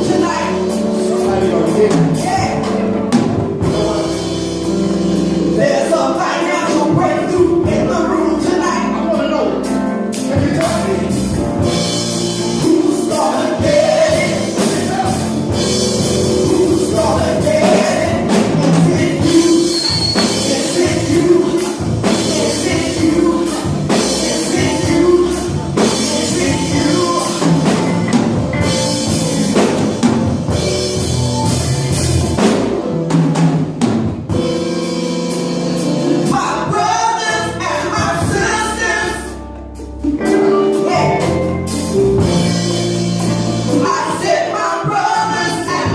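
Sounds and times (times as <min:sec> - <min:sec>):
band playing: 0:00.0 - 0:45.9
person singing: 0:16.2 - 0:28.0, 0:40.2 - 0:41.6.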